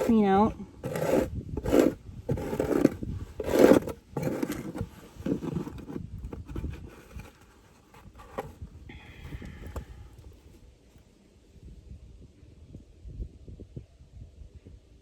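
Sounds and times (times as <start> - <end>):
scraping on beehive boards: 0.0 - 10.0.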